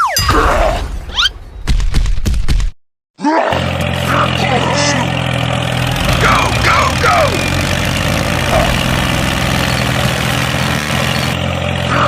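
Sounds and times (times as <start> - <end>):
engine idling: 3.6 - 12.0.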